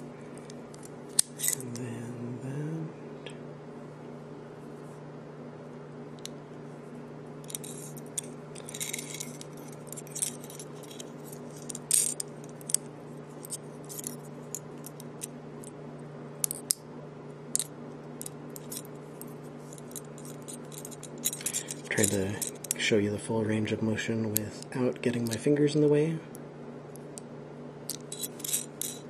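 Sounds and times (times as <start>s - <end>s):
steady low hum: 0.0s - 29.0s
carabiners clicking and clinking: 7.5s - 12.8s, 17.6s - 18.9s, 19.7s - 22.8s, 27.9s - 29.0s.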